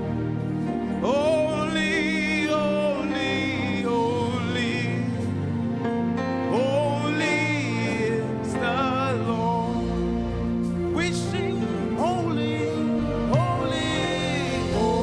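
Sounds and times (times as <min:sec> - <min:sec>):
person singing with vibrato: 0:06.5 - 0:15.0.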